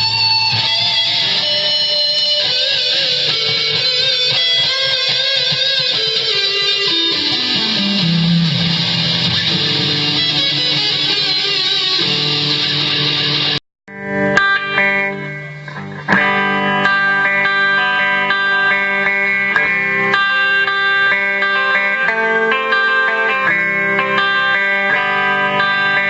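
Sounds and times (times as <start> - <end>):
electric guitar: 0.0 - 26.0.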